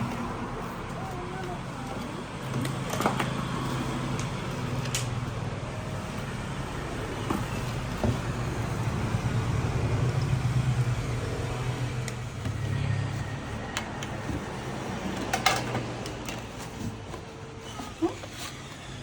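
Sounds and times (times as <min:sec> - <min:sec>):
vehicle engine droning: 0:00.0 - 0:16.5.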